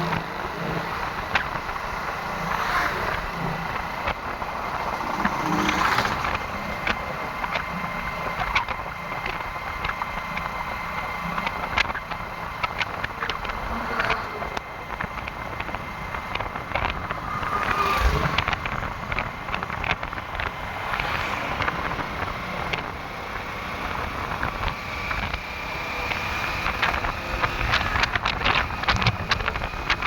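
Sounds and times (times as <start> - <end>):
machine engine rumble: 0.0 - 30.0
wind buffeting microphone: 0.0 - 30.0.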